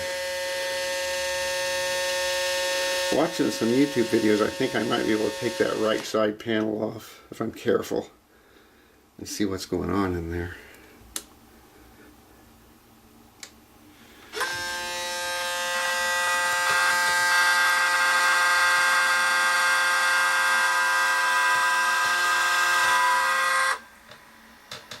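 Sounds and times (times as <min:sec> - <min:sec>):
electric motor whining: 0:00.0 - 0:06.1, 0:14.2 - 0:23.9.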